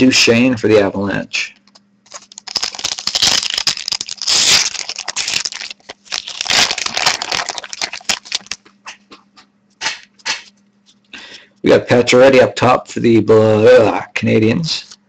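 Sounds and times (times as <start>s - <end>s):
wrapper crinkling: 1.7s - 8.8s.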